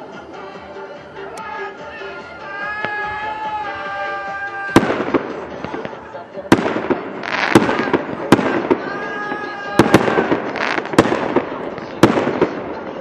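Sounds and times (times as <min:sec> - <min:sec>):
firework crackle: 0:04.8 - 0:13.0.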